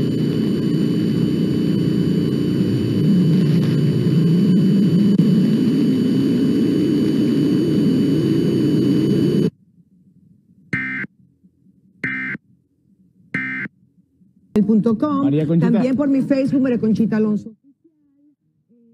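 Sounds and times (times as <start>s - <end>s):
loud rumbling noise: 0.0s - 9.5s
faint high whine: 0.0s - 14.5s
electronic data bursts: 10.8s - 11.1s, 12.0s - 12.4s, 13.4s - 13.7s.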